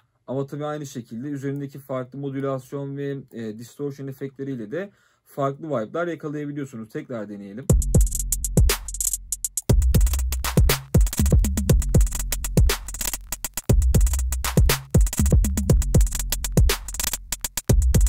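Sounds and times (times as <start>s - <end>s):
drum machine loop: 7.7s - 18.0s.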